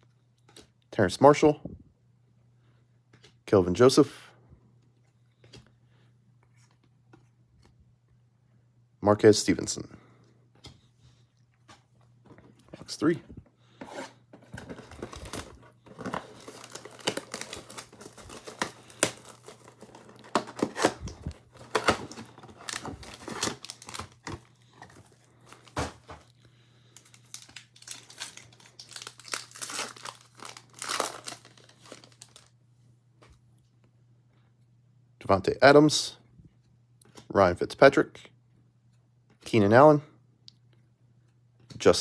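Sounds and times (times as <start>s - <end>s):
plastic wrapping crinkling and tearing: 14.5s - 32.5s.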